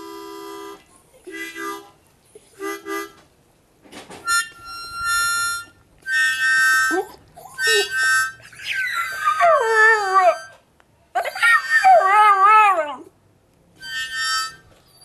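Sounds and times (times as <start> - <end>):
harmonica chords: 0.0 - 2.0, 2.6 - 3.2, 4.2 - 9.2, 13.8 - 15.0
dog howling and yelping: 6.9 - 10.6, 11.2 - 13.1.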